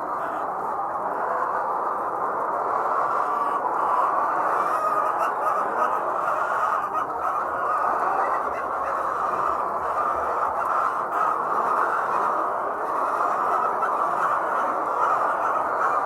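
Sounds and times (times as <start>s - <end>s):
hens clucking: 0.0s - 16.0s.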